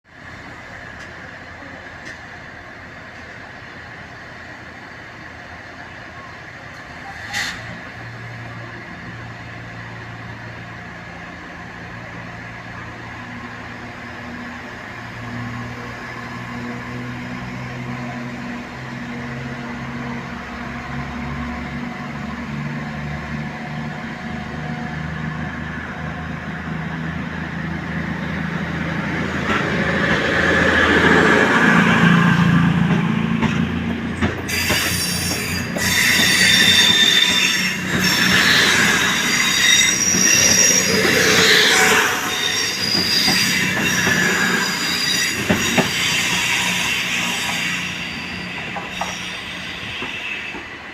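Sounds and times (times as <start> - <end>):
train diesel engines droning: 0.1 - 50.9
train wheels squealing: 6.9 - 7.9, 34.4 - 50.9.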